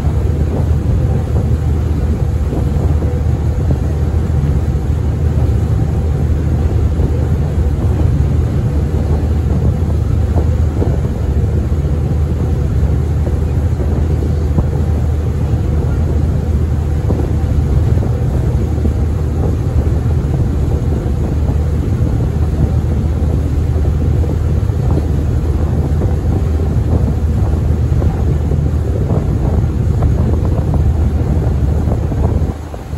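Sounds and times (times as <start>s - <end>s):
ferry engine droning: 0.0s - 32.9s
water noise: 0.0s - 32.9s
wind: 0.0s - 32.9s.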